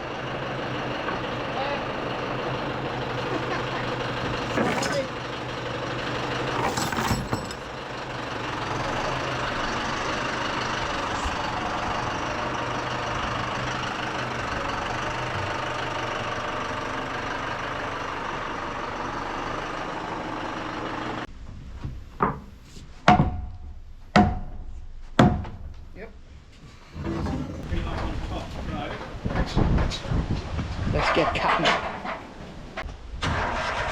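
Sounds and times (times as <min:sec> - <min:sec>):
engine idling: 0:00.0 - 0:21.3
sharp ringing knocks: 0:24.1 - 0:24.6.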